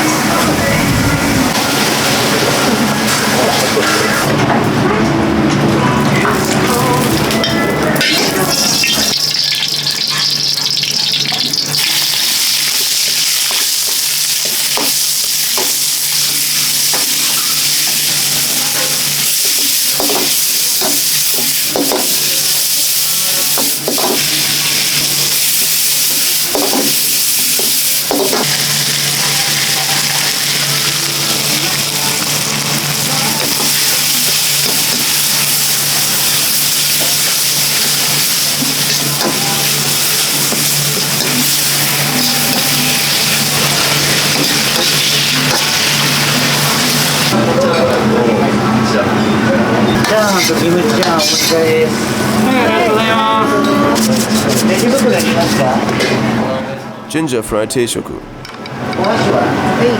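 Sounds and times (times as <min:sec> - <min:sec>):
rice sizzling in a wok: 0:08.2 - 0:47.4.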